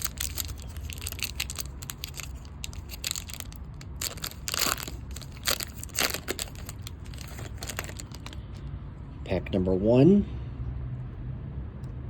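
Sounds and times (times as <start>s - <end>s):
foil wrapper crinkling and tearing: 0.0s - 8.4s.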